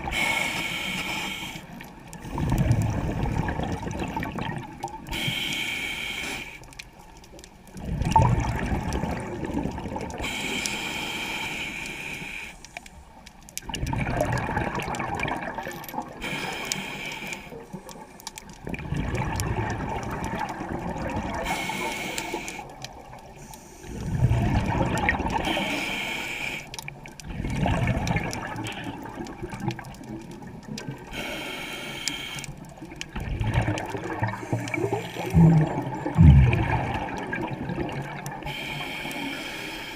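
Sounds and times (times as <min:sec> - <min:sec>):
bubbling exhaust underwater: 0:00.0 - 0:06.8, 0:07.6 - 0:12.8, 0:13.5 - 0:39.9
hissing regulator inhale: 0:00.1 - 0:01.8, 0:05.1 - 0:06.7, 0:10.2 - 0:12.8, 0:16.2 - 0:17.6, 0:21.4 - 0:22.7, 0:25.4 - 0:26.8, 0:31.1 - 0:32.6, 0:38.4 - 0:39.9.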